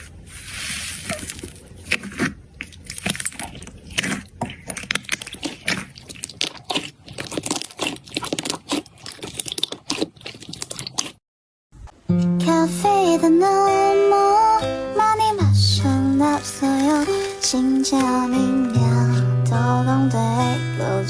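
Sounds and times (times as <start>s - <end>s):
slime crackling and popping: 1.9s - 11.1s
music: 11.9s - 21.0s.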